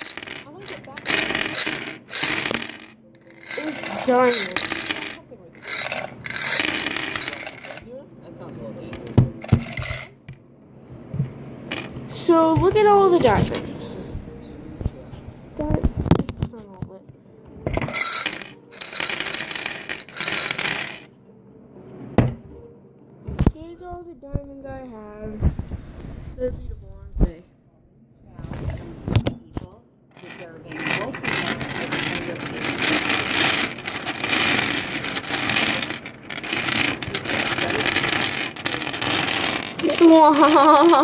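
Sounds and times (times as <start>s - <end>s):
toy diamonds clattering: 0.0s - 8.0s, 9.0s - 10.2s, 17.7s - 21.1s, 30.2s - 41.0s.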